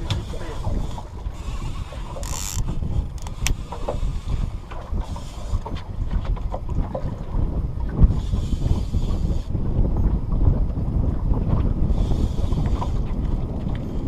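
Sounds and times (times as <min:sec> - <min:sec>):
wind buffeting microphone: 0:00.0 - 0:14.0
faint clicks: 0:02.1 - 0:04.0.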